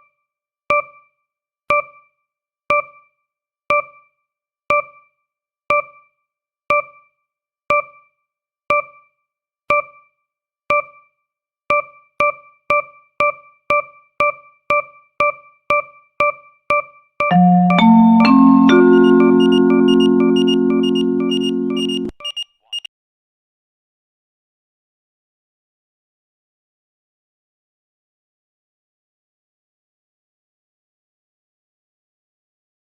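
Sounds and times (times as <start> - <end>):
countdown timer ticking: 3.7 - 4.1, 4.7 - 5.1, 5.7 - 6.1, 6.7 - 7.1, 7.7 - 8.1, 8.7 - 9.1, 11.7 - 22.4.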